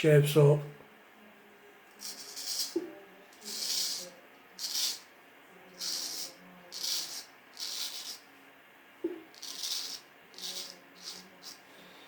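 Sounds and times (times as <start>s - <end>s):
razor scraping through beard: 2.0s - 2.8s, 3.4s - 5.1s, 5.8s - 8.3s, 9.3s - 11.7s.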